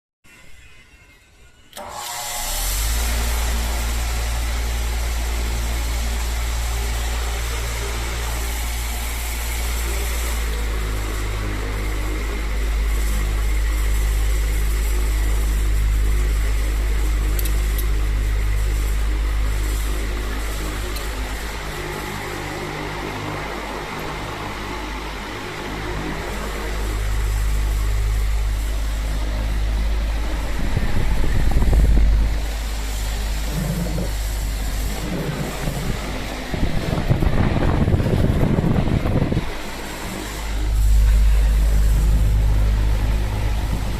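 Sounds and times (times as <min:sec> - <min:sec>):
electric fan humming: 0:01.6 - 0:43.9
fan air rushing: 0:01.7 - 0:43.9
wind rumble on microphone: 0:26.8 - 0:43.9.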